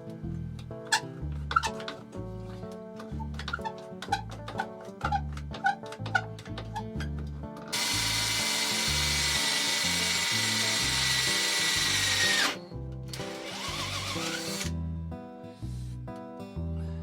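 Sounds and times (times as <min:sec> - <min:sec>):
background music: 0:00.0 - 0:17.0
power drill whining: 0:07.7 - 0:14.7.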